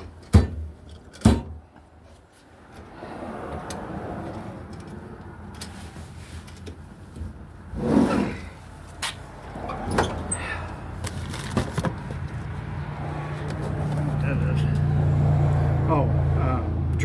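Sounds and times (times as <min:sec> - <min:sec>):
sharp knocks on metal: 0:00.0 - 0:01.6
drawer rumbling along slides: 0:07.7 - 0:08.5.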